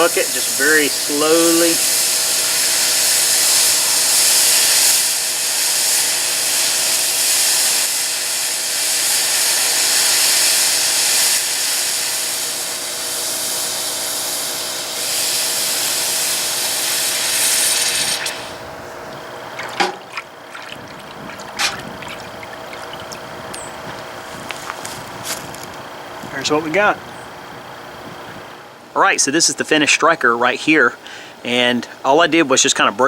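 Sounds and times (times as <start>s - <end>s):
hot steel hissing in water: 0.0s - 18.7s.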